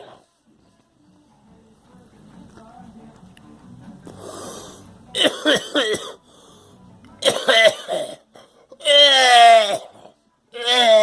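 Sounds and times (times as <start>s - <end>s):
wheezy breath in: 4.1s - 5.0s, 6.2s - 6.9s
person coughing harshly: 5.2s - 6.2s, 7.2s - 10.0s.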